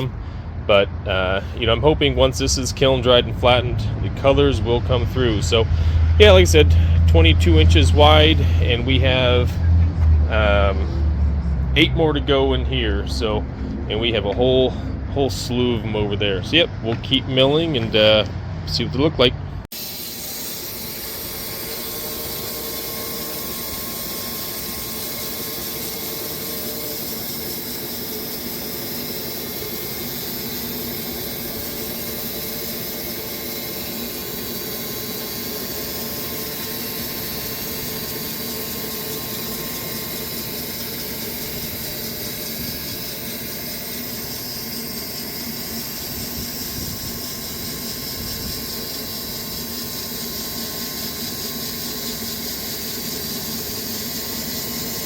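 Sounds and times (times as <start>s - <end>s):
sawmill cutting a log: 1.1s - 19.1s, 19.7s - 55.0s.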